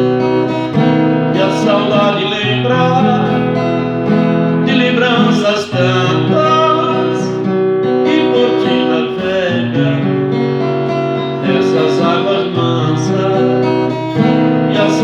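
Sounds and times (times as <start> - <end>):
guitar melody with accompaniment: 0.0 - 15.0.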